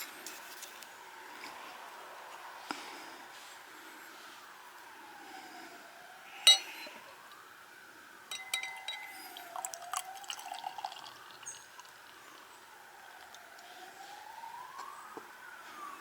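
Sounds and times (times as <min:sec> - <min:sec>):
faint siren: 0:00.0 - 0:16.0
glass clinking: 0:06.4 - 0:07.0, 0:08.3 - 0:11.9
liquid pouring: 0:08.3 - 0:12.5.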